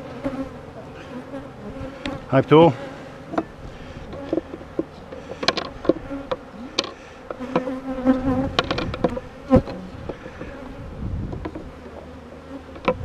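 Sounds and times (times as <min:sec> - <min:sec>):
bees buzzing: 0:00.0 - 0:13.0
low buzz passing: 0:00.0 - 0:13.0
hive tool clicks and knocks: 0:04.1 - 0:10.5.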